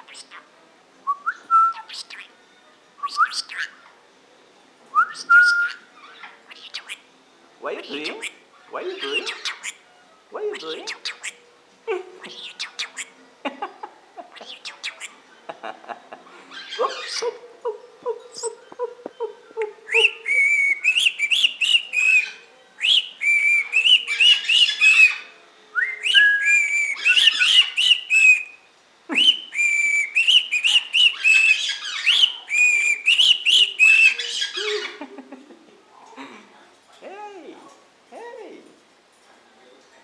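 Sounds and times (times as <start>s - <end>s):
pet bird whistling: 3.0s - 3.8s, 5.0s - 5.9s, 19.9s - 34.9s.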